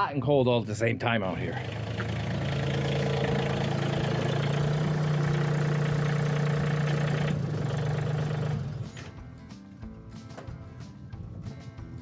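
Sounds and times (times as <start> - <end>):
tractor engine idling: 1.3 - 9.1.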